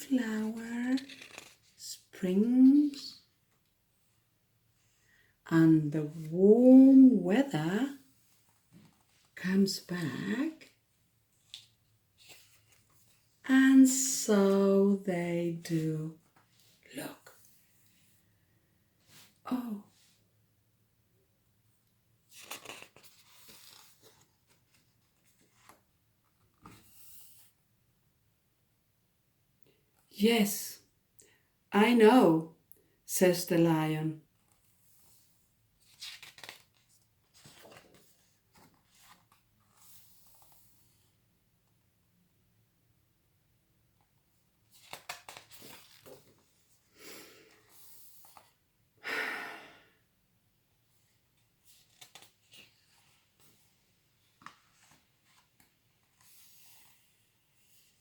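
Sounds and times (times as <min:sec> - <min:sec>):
book pages rustling: 0:00.4 - 0:01.8, 0:10.6 - 0:13.3, 0:22.3 - 0:27.6, 0:34.4 - 0:41.1, 0:44.6 - 0:46.9, 0:47.5 - 0:48.6, 0:51.1 - 0:58.0.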